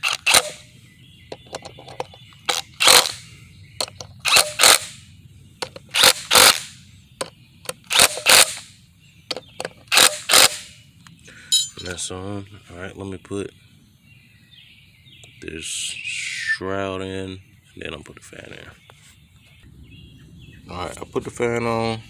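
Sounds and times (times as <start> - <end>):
impact wrench rattling bursts: 0.0 - 0.6, 2.5 - 3.2, 4.2 - 5.0, 5.7 - 6.7, 7.9 - 8.7, 9.3 - 10.7.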